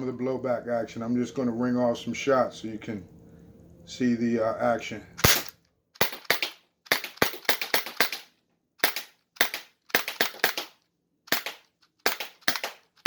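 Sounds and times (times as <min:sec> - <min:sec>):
pellet pistol shots: 0:05.2 - 0:13.0
pistol slide clacking: 0:05.2 - 0:13.0.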